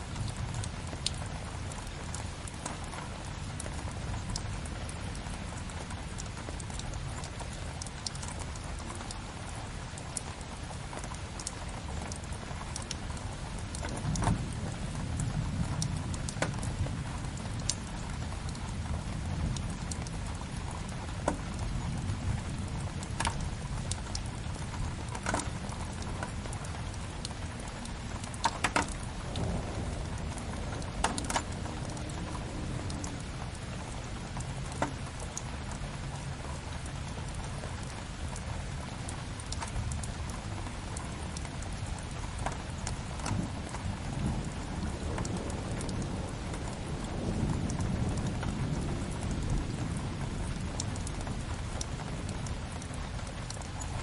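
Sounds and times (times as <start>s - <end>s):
steady rain: 0.0s - 54.0s.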